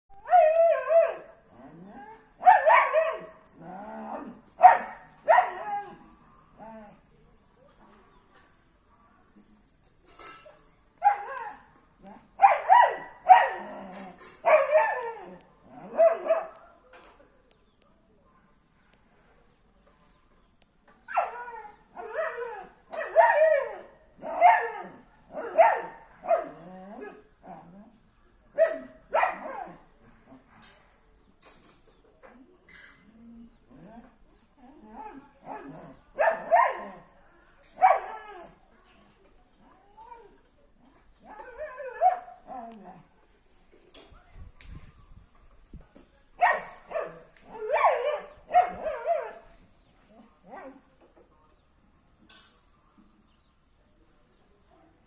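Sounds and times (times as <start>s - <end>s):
dog barking and whining: 0.2s - 7.0s, 10.4s - 16.6s, 21.1s - 27.9s, 37.8s - 38.6s, 41.2s - 43.0s, 46.4s - 49.5s.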